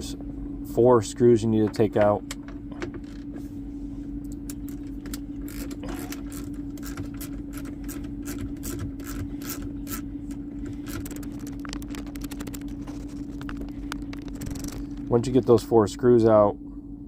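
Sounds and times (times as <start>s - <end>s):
steady low hum: 0.0s - 17.0s
ratchet clicking rapidly: 5.5s - 10.0s, 10.7s - 15.2s.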